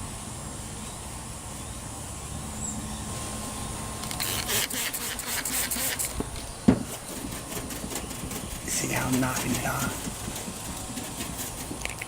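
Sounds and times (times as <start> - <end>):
quick rubbing strokes: 6.8 - 12.0.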